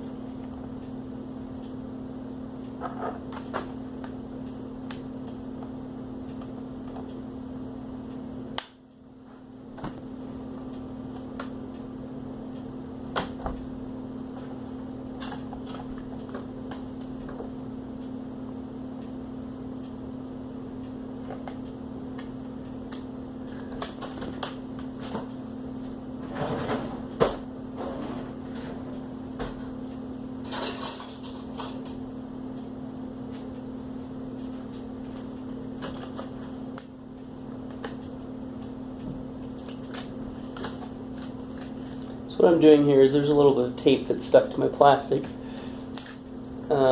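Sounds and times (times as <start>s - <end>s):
steady low hum: 0.0s - 46.9s.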